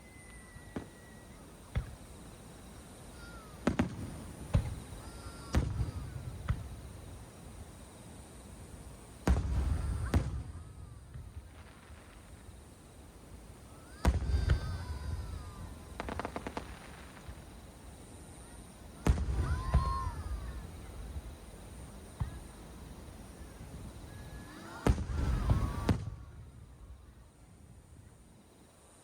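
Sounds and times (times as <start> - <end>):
fireworks booming: 0.0 - 7.9, 8.7 - 27.4
fireworks crackling: 0.0 - 28.5
small firework pop: 16.0 - 17.4.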